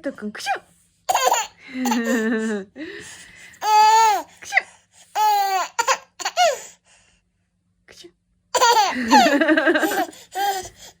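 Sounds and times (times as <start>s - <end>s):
baby laughing: 1.1s - 2.5s, 3.6s - 4.3s, 5.2s - 6.7s, 8.6s - 10.8s
baby squealing: 5.2s - 6.6s.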